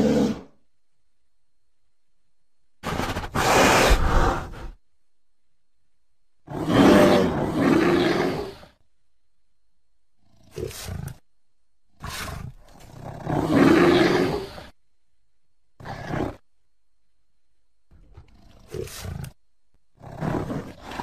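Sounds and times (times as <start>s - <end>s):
creature roar: 6.5s - 8.7s.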